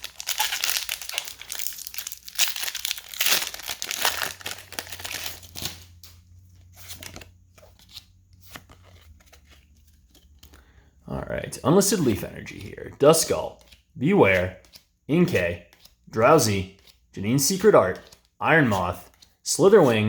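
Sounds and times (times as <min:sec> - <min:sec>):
foil wrapper crinkling and tearing: 0:00.0 - 0:05.9.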